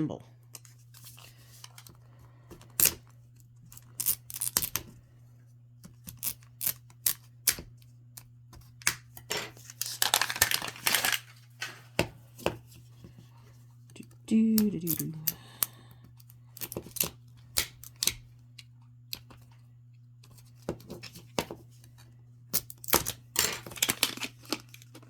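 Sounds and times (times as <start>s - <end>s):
wrapping crinkling and tearing: 9.5s - 11.5s.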